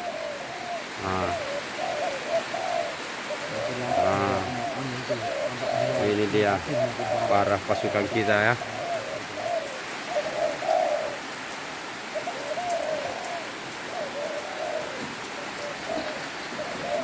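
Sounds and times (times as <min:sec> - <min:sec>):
doves cooing: 0:00.0 - 0:17.0
rain hissing: 0:00.0 - 0:17.0.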